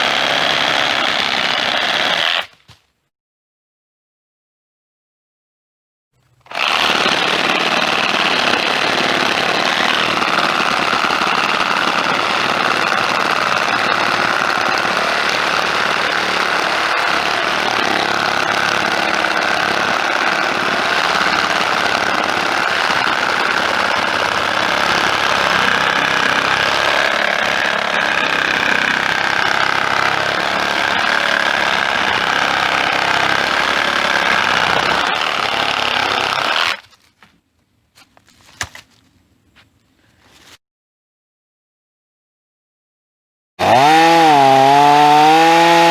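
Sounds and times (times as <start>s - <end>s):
power saw running: 0.0s - 2.5s, 6.5s - 36.8s, 43.6s - 45.9s.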